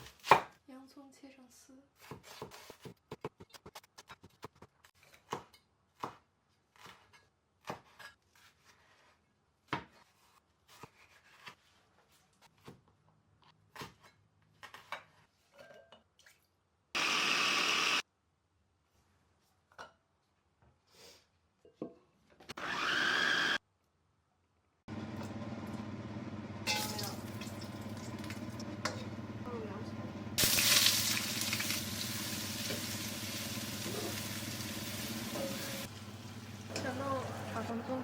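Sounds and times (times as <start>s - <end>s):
knife slicing onion on board: 0.0s - 0.6s, 2.0s - 9.0s, 9.7s - 11.7s, 13.7s - 15.2s.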